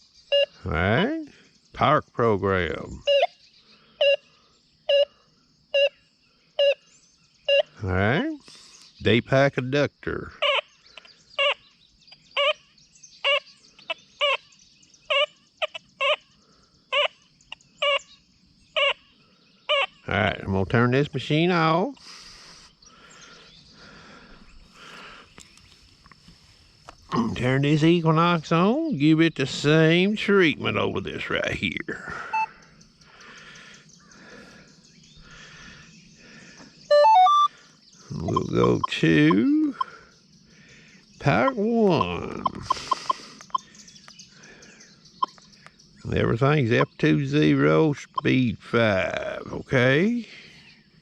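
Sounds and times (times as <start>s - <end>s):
metal detector warbling beeps: 0.3s - 1.1s, 3.0s - 3.4s, 4.0s - 4.3s, 4.9s - 5.2s, 5.8s - 6.0s, 6.6s - 6.8s, 7.5s - 7.8s, 10.4s - 10.7s, 11.4s - 11.6s, 13.2s - 13.4s, 14.2s - 14.4s, 15.1s - 16.2s, 16.9s - 17.2s, 32.3s - 32.5s, 36.9s - 39.9s, 41.2s - 43.7s, 48.0s - 48.5s
electronic start-up tune: 36.9s - 37.5s.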